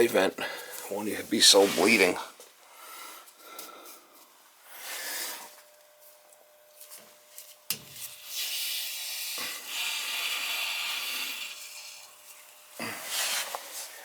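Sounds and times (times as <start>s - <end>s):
water hissing through valve: 8.3s - 12.1s.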